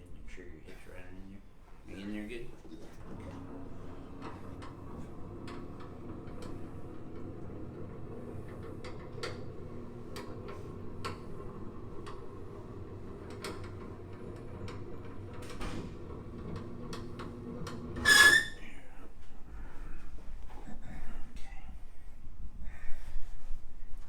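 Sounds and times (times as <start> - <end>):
low room hum: 0.0 - 24.0.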